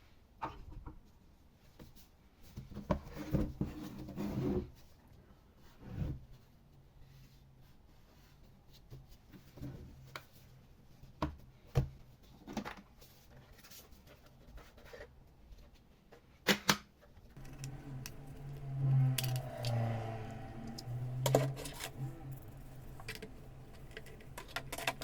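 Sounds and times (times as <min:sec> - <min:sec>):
laptop and tools handled: 0:17.4 - 0:19.8, 0:20.6 - 0:25.0.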